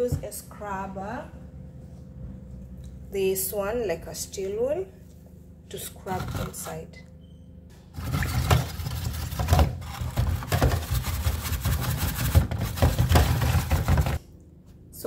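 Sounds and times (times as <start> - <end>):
steel wool scrubbing plastic tray: 8.0 - 14.2.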